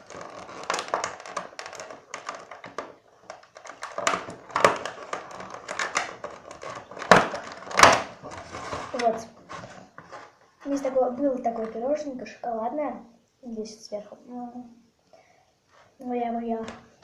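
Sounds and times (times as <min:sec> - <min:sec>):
plastic packaging crinkling: 0:00.0 - 0:12.1.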